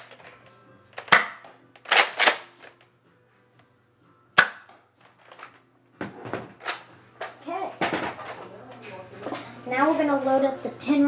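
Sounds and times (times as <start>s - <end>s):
toy blaster firing pops: 4.4s - 4.8s.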